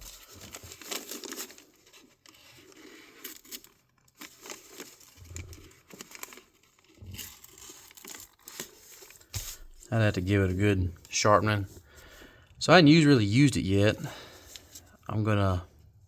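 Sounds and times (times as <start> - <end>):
knife rustling and tearing material: 0.0 - 10.4.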